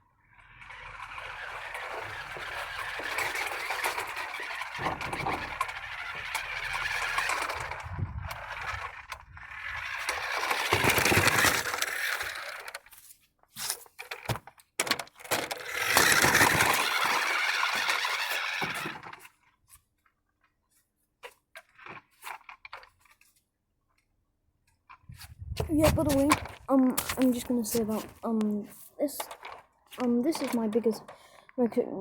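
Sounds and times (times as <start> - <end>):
remote-control car motor running: 0.3 - 12.9, 15.2 - 19.4.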